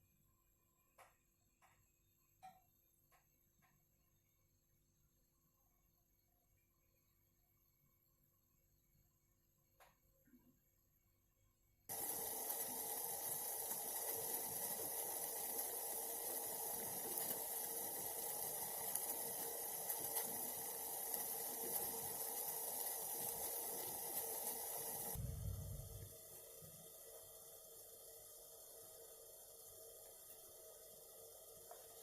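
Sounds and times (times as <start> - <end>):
hot water hissing: 11.9 - 32.0
low rumble: 25.2 - 26.2.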